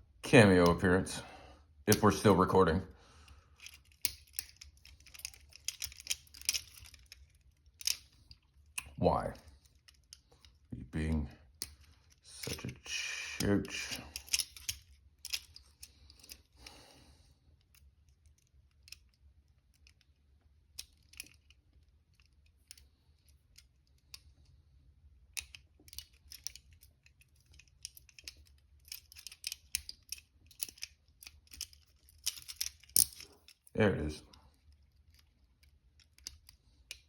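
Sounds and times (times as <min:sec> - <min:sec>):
lock pick clicks and scrapes: 0:03.6 - 0:08.9, 0:11.6 - 0:16.6, 0:25.3 - 0:33.7, 0:34.6 - 0:37.0
handcuffs clinking: 0:03.6 - 0:10.7, 0:11.5 - 0:16.8, 0:20.8 - 0:24.4, 0:25.3 - 0:37.0.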